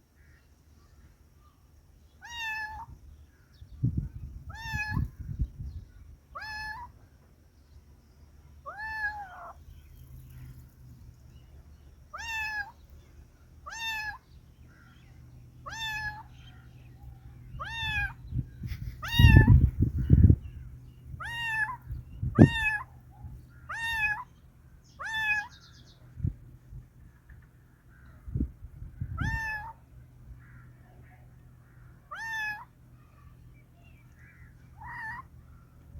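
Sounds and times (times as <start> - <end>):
cat meowing: 2.2 - 2.9, 4.5 - 5.1, 6.4 - 6.9, 8.7 - 9.6, 12.2 - 12.8, 13.7 - 14.2, 15.6 - 16.3, 17.6 - 18.2, 19.0 - 19.5, 21.2 - 21.8, 22.4 - 22.9, 23.7 - 24.3, 25.0 - 25.5, 29.2 - 29.8, 32.1 - 32.7, 34.8 - 35.3.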